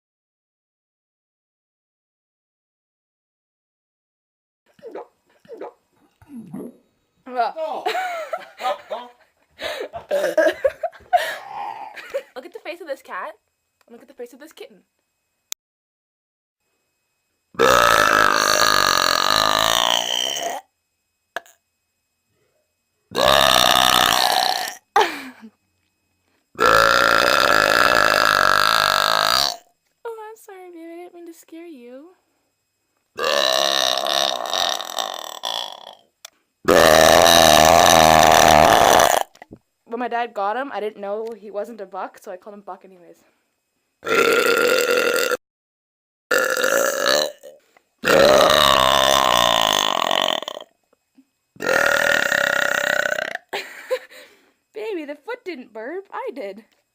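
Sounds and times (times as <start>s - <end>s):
person belching: 4.8s - 6.8s, 11.4s - 12.0s, 17.6s - 20.7s, 23.1s - 24.8s, 26.6s - 29.7s, 33.2s - 36.0s, 36.7s - 39.6s, 44.0s - 45.4s, 46.3s - 50.7s, 51.6s - 53.5s
person burping loudly: 4.8s - 6.8s, 10.0s - 10.5s, 11.2s - 12.0s, 17.6s - 20.7s, 23.1s - 25.0s, 26.6s - 29.7s, 33.2s - 36.0s, 36.7s - 39.6s, 44.0s - 45.4s, 46.3s - 50.7s, 51.6s - 53.6s.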